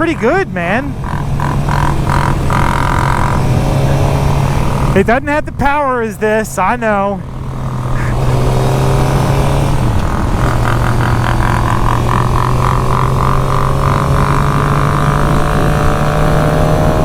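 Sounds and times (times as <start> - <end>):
pulsing tone: 0.0 - 4.1, 10.0 - 15.0
motorcycle engine running: 0.0 - 17.0
wind noise: 7.9 - 17.0.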